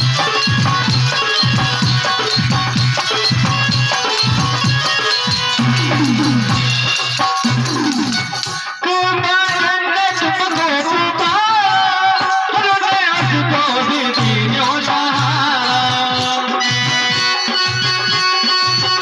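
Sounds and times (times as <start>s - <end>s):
wavering melody line: 0.0s - 8.8s
drum beat: 0.0s - 19.0s.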